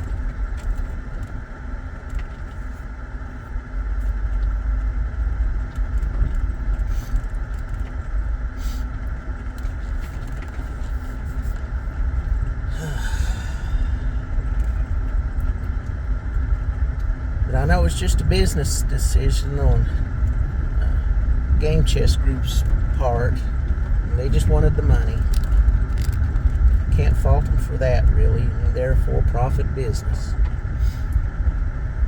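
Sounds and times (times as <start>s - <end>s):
faint constant hum: 0.0s - 32.0s
road and engine rumble: 0.0s - 32.0s.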